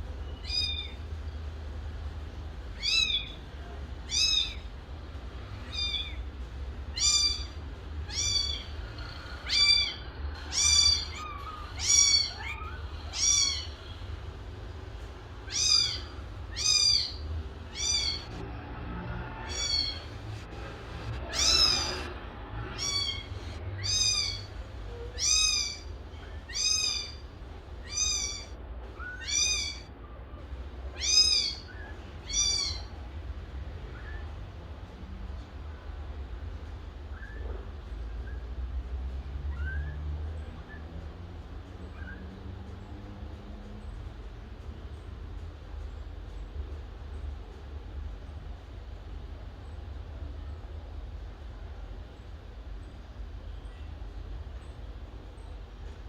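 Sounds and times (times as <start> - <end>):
kitten meowing: 0.4 - 1.0, 2.8 - 3.4, 4.0 - 4.7, 5.6 - 6.2, 6.9 - 8.8, 9.4 - 13.8, 15.4 - 18.3, 19.4 - 20.1, 21.3 - 22.0, 22.8 - 24.5, 25.1 - 25.9, 26.5 - 27.2, 27.8 - 29.9, 31.0 - 32.9.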